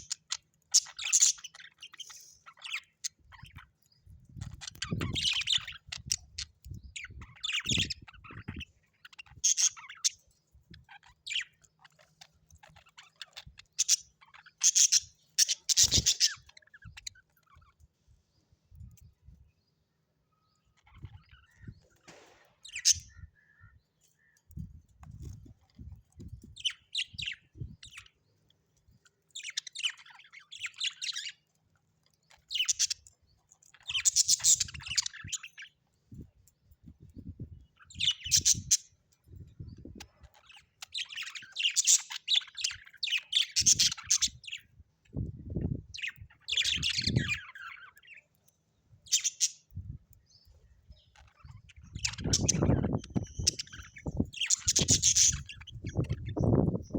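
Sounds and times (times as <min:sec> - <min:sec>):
budgerigars chirping: 0:00.0 - 0:17.8, 0:22.6 - 0:24.4, 0:29.3 - 0:31.4, 0:32.3 - 0:35.8, 0:37.8 - 0:38.9, 0:40.0 - 0:44.7, 0:45.6 - 0:48.2, 0:49.0 - 0:49.7, 0:51.0 - 0:56.9.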